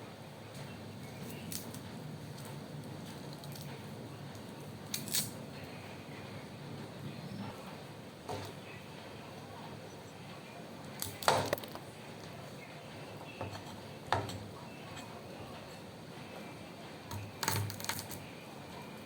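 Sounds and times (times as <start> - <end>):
faint steady hum: 0.0 - 19.0
utensils and dishes clinking: 7.3 - 8.9, 11.0 - 19.0.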